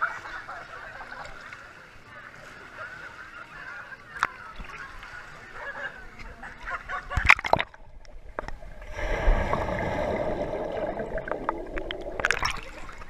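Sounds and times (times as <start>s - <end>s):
water splashing and gurgling: 6.6s - 13.0s.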